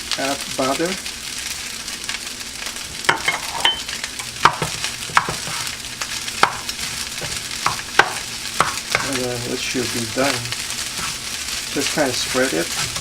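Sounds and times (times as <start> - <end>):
rice sizzling in a pan: 0.0 - 13.0
spatula scraping a pan: 3.0 - 13.0.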